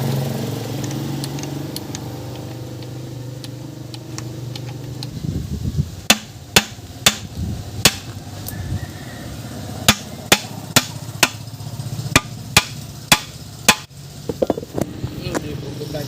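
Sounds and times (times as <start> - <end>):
hammer blows: 6.1 - 8.2, 9.8 - 11.5, 12.1 - 13.9.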